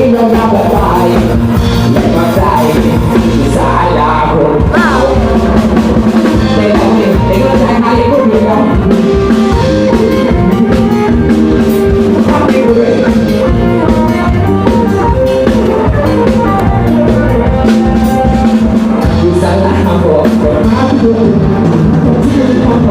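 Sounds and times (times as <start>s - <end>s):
drum kit beat: 0.0s - 22.9s
melody over drone note: 4.8s - 22.9s.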